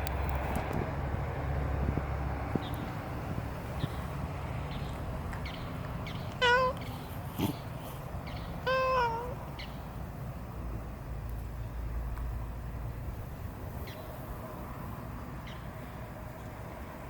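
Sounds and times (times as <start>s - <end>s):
cat meowing: 6.4s - 7.6s, 8.6s - 9.4s.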